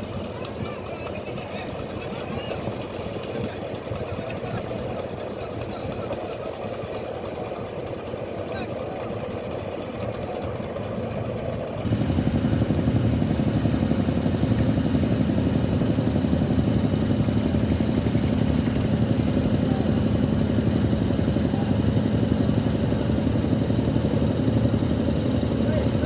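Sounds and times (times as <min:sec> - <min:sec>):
boat engine chugging: 0:00.0 - 0:26.0.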